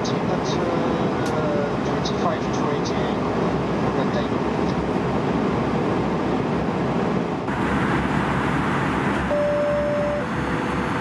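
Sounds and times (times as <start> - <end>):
airplane cabin noise: 0.0 - 11.0
single steady beep: 9.3 - 10.3.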